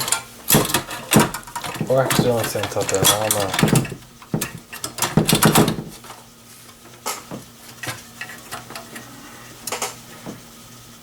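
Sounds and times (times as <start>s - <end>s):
computer hardware clicks and knocks: 0.0s - 6.0s.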